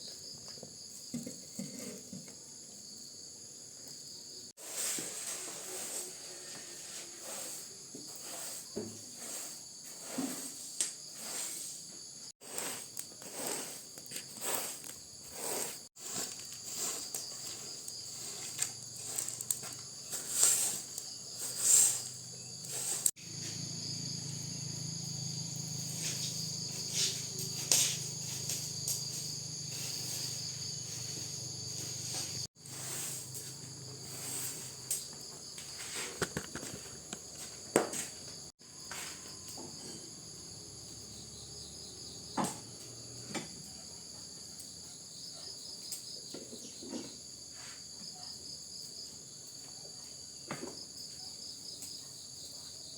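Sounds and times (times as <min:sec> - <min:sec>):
insects chirping: 0:00.0 - 0:52.9
knocks and scrapes: 0:00.6 - 0:02.5, 0:04.6 - 0:23.7, 0:25.8 - 0:40.2.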